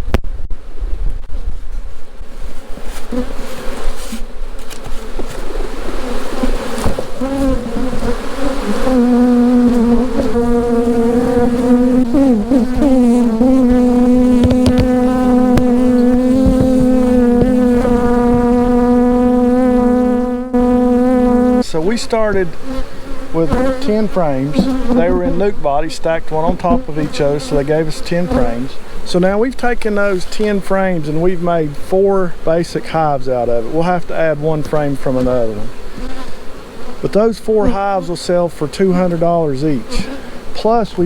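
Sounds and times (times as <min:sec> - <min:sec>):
bee buzzing at microphone: 0:01.9 - 0:41.0
honeybees buzzing: 0:02.0 - 0:41.0
knocks from hive handling: 0:06.4 - 0:18.9, 0:23.5 - 0:25.2.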